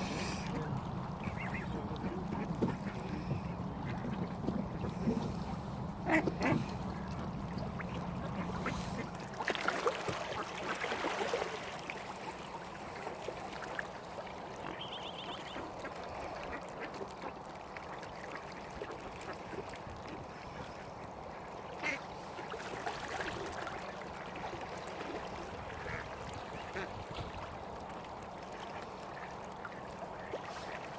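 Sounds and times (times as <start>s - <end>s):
ducks quacking: 0.0s - 7.2s, 8.2s - 9.2s, 21.8s - 22.1s, 25.8s - 27.0s.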